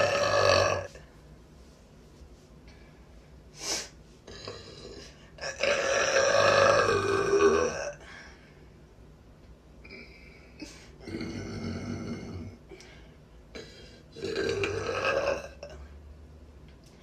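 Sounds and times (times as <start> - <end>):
woman burping loudly: 0.0 - 1.0, 4.3 - 8.0, 13.5 - 15.9.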